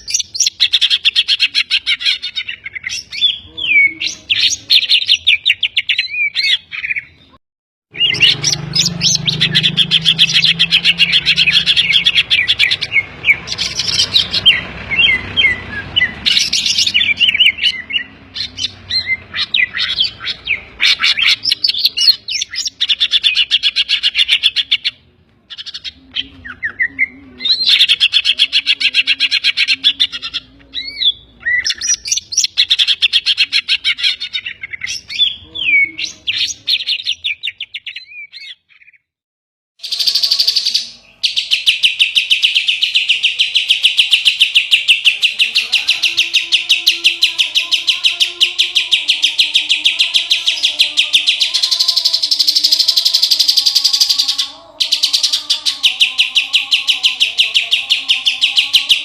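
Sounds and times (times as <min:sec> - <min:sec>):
bird fast trill: 0:07.9 - 0:24.9, 0:39.8 - 0:59.0
bird singing whistled phrases: 0:25.6 - 0:33.7.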